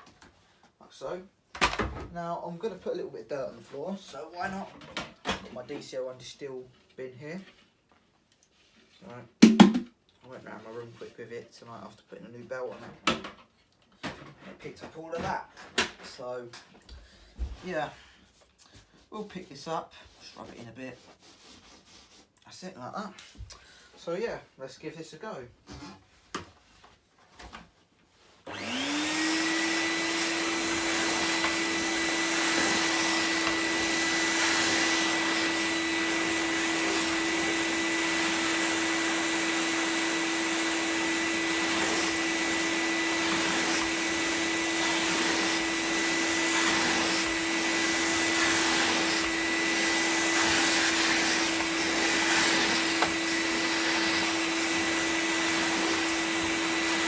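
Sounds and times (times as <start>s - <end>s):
vacuum cleaner running: 28.4s - 57.0s.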